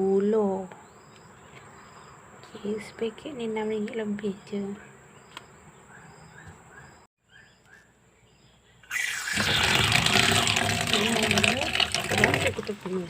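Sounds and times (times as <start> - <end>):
faint bird chirps: 4.2 - 9.4
water running from a tap: 9.0 - 13.0.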